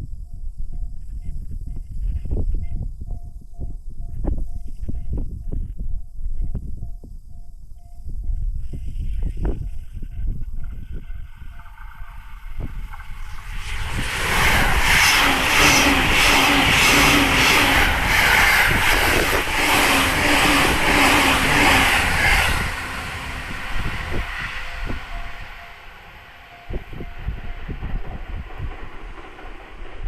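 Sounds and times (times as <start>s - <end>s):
electric train passing at speed: 10.7s - 30.0s
level crossing warning bell: 22.6s - 28.6s.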